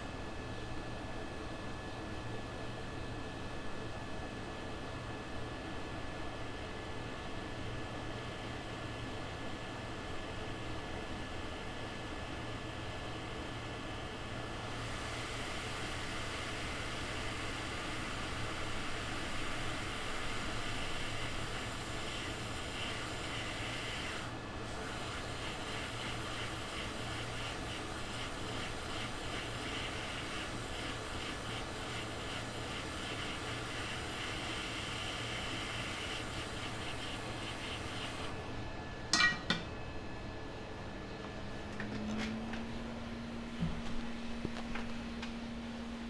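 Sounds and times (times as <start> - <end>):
fan-like hiss of moving air: 8.2 - 38.8.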